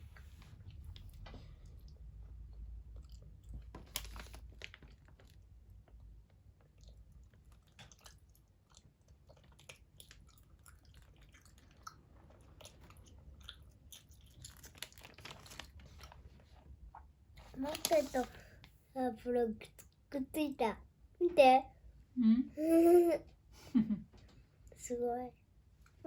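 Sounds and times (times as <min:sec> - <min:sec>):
toddler chewing wet mouth smacks: 0:06.6 - 0:15.2.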